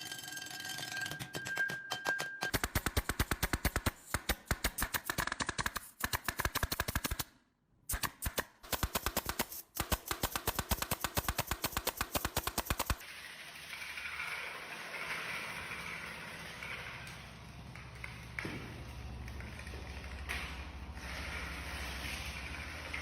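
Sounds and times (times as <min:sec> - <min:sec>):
rapid even clicking: 0:07.9 - 0:13.0.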